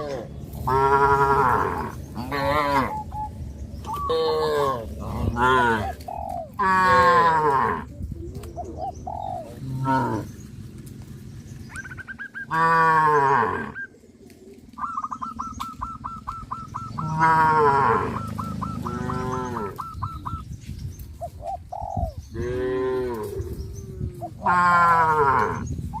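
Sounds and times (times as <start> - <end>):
cattle mooing: 0.0 - 3.1, 4.0 - 6.0, 6.6 - 7.9, 9.6 - 10.3, 12.5 - 13.9, 16.9 - 19.9, 22.4 - 23.6, 24.4 - 25.7
bird chirping rapidly: 8.6 - 12.6, 14.8 - 22.4.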